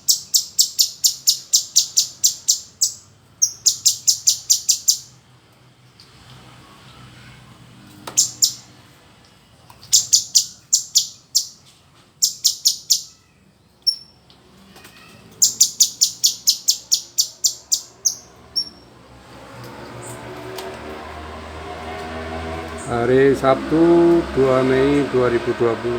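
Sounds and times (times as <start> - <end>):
bird singing sharp chipping notes: 0.0 - 5.1, 8.1 - 8.7, 9.9 - 11.6, 12.2 - 13.2, 15.4 - 18.8.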